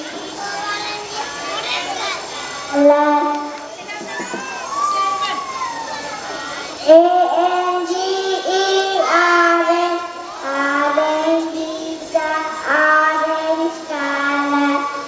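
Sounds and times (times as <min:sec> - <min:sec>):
girl singing: 0:00.0 - 0:03.6, 0:06.8 - 0:15.0.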